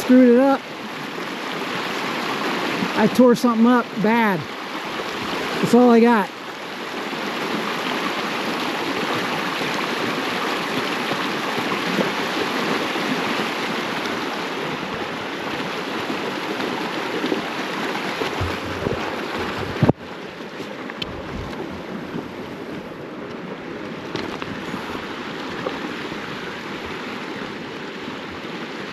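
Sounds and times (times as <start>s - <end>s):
stream water rushing: 0.0s - 28.9s
wind buffeting microphone: 18.2s - 20.1s, 20.8s - 27.0s.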